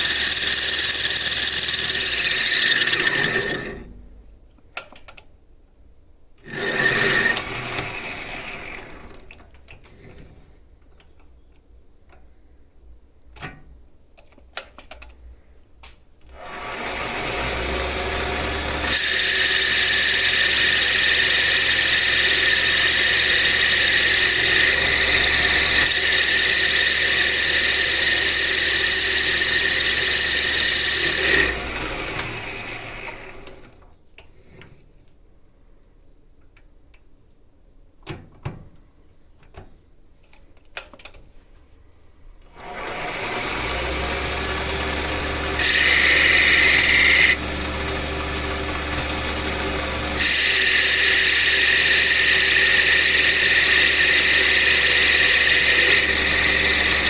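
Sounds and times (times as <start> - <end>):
power tool running: 0.0 - 3.9, 6.4 - 9.3, 16.3 - 33.8, 42.5 - 57.0
small clicks and handling knocks: 4.5 - 5.4, 9.2 - 12.3, 13.2 - 15.2, 38.0 - 41.3.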